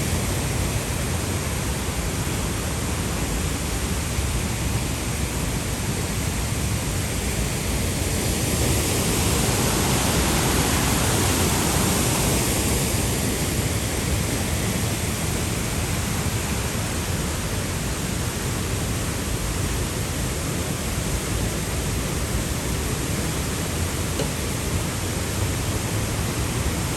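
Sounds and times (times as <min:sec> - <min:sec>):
waterfall roaring: 0:07.9 - 0:26.9.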